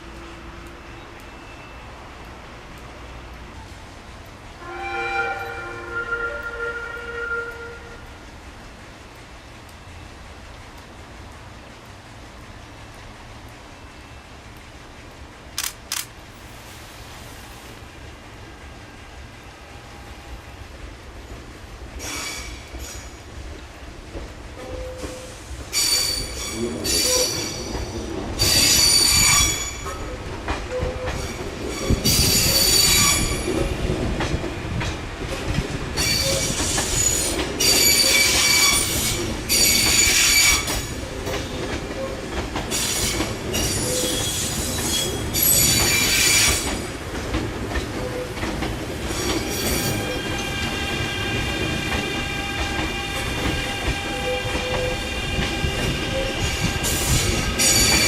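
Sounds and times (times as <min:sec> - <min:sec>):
train rumble: 0:00.0 - 0:58.0
train wheels squealing: 0:00.8 - 0:02.0, 0:22.0 - 0:23.3, 0:24.6 - 0:33.8, 0:36.0 - 0:46.8, 0:49.1 - 0:51.6, 0:52.4 - 0:58.0.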